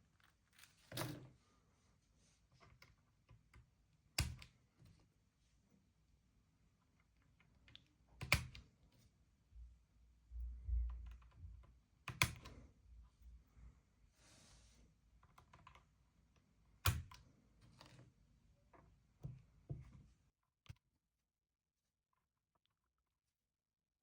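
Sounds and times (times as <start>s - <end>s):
mechanical keyboard keystrokes: 4.2s - 4.5s, 8.2s - 8.6s, 12.1s - 12.6s, 16.8s - 17.2s.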